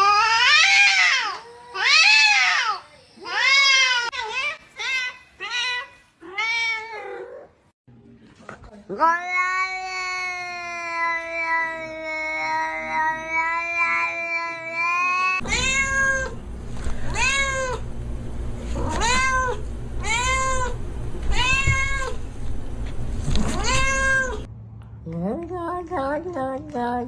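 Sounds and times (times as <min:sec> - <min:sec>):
cat meowing: 0:00.0 - 0:07.5, 0:09.0 - 0:16.4, 0:17.1 - 0:17.8, 0:18.8 - 0:22.2, 0:23.4 - 0:24.5.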